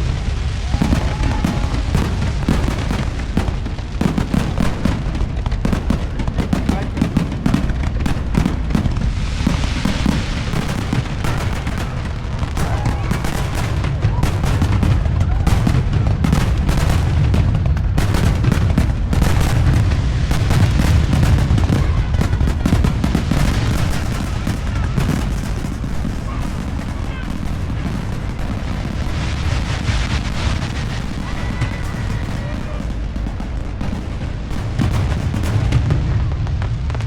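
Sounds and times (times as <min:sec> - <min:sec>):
deep rumble: 0:00.0 - 0:37.0
fireworks bursts and booms: 0:00.0 - 0:37.0.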